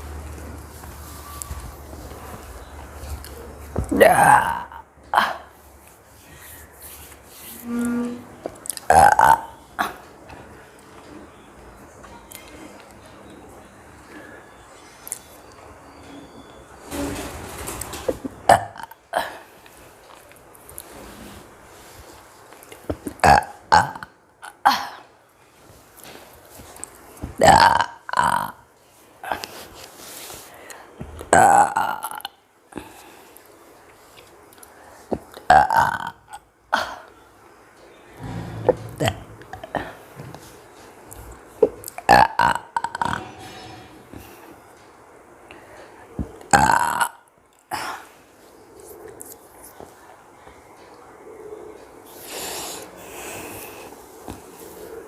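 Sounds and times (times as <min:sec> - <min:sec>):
woman burping: 0:03.9 - 0:05.5, 0:08.8 - 0:10.0, 0:18.5 - 0:19.5, 0:23.2 - 0:25.0, 0:38.2 - 0:40.0, 0:46.5 - 0:47.9.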